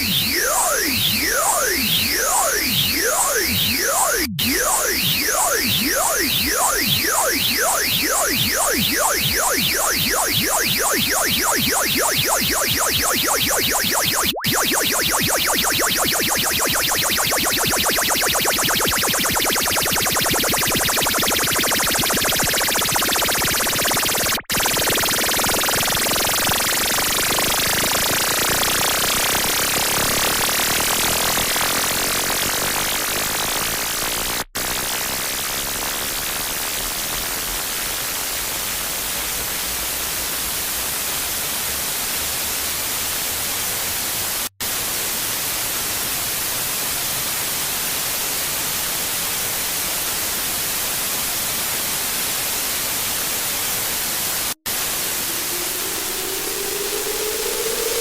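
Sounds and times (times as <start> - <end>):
rising tone: 0.0 - 26.8, 54.7 - 58.0.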